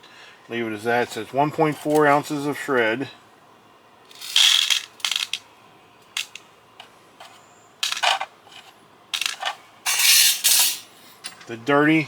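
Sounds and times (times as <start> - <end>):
scrap metal clinking and rattling: 9.2 - 10.9.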